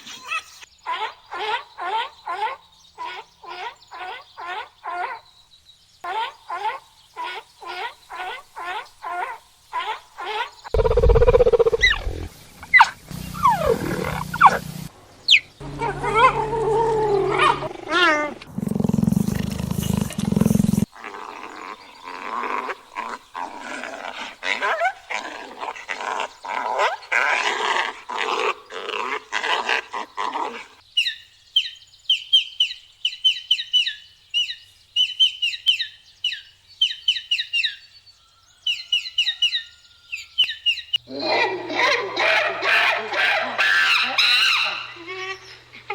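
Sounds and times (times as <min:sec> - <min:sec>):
bird chirping: 0:00.0 - 0:28.9, 0:29.8 - 0:42.2
rapid repeated animal calls: 0:06.0 - 0:14.8, 0:15.7 - 0:30.8
animal roaring calls: 0:10.8 - 0:14.9, 0:15.6 - 0:28.0.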